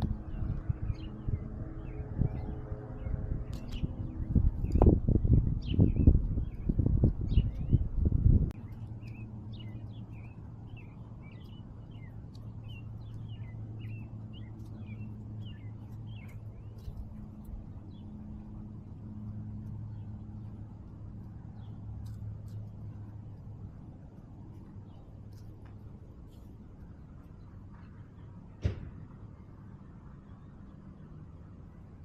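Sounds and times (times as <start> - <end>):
loud low rumble: 0.0 - 11.0
small birds chirping: 0.0 - 28.6
steady low hum: 0.0 - 32.0.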